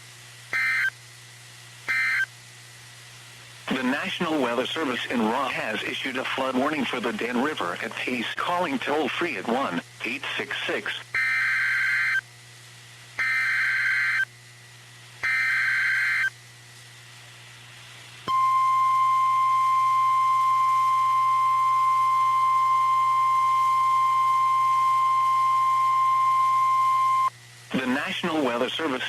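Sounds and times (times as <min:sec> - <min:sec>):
steady warning alarm tone: 0:00.6 - 0:00.9, 0:01.9 - 0:02.3, 0:11.2 - 0:12.2, 0:13.2 - 0:14.3, 0:15.2 - 0:16.3, 0:18.3 - 0:27.3
data tone bursts: 0:18.3 - 0:27.3.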